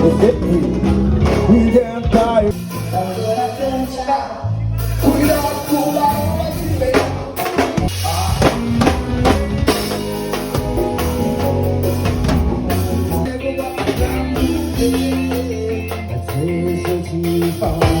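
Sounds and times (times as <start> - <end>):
live band playing instrumental: 0.0 - 18.0
bass drum and snare hits: 7.0 - 14.9.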